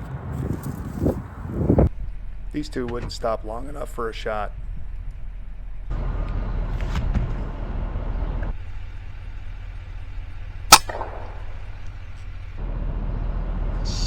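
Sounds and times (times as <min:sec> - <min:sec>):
low background rumble: 0:01.8 - 0:13.4
air rifle shot: 0:10.7 - 0:12.1.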